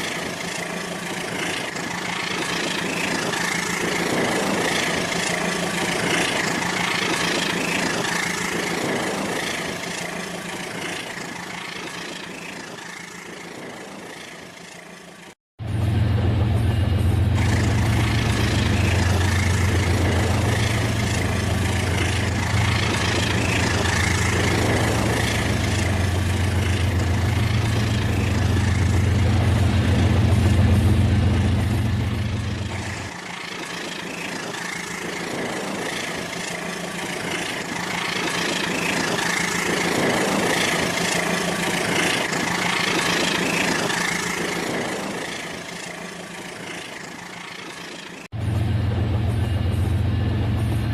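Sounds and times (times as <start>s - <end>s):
wheels rattling on track: 0.0s - 50.9s
toy train motor humming: 32.2s - 48.3s.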